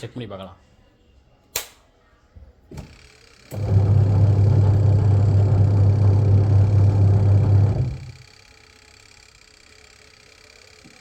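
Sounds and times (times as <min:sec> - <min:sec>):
washing machine motor humming: 0:02.8 - 0:08.7.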